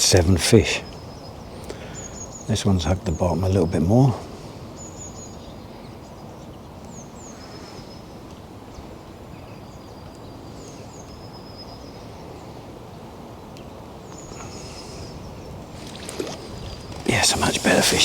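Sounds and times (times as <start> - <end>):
small birds chirping: 0.0 - 18.0
low ambient rumble: 14.4 - 18.0.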